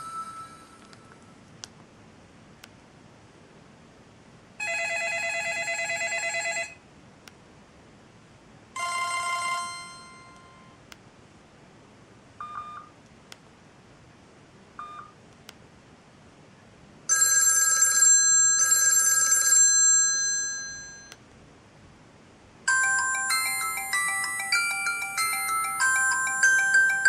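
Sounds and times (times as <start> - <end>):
melodic ringtone: 0.0 - 1.2, 8.8 - 10.7, 22.7 - 27.0
trilling phone ringtone: 0.0 - 1.2, 4.6 - 6.8, 8.8 - 10.7, 17.1 - 21.1, 22.7 - 27.0
soft clicks: 13.0 - 13.5.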